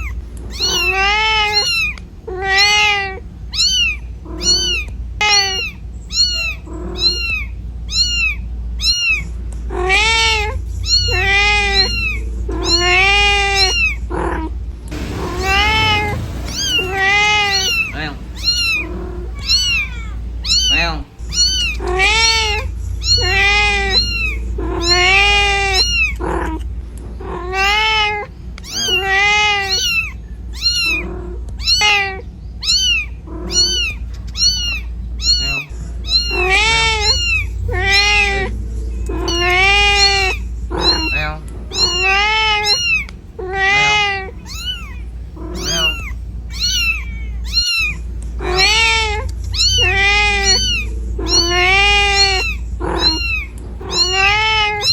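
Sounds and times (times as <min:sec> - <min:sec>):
cat meowing: 0:00.0 - 0:54.9
low rumble: 0:03.2 - 0:29.1, 0:30.3 - 0:43.5, 0:44.3 - 0:54.9.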